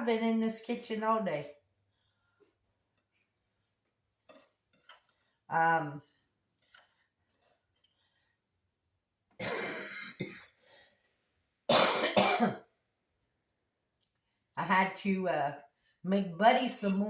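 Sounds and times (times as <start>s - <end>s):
person coughing: 9.4s - 10.6s, 11.7s - 12.7s.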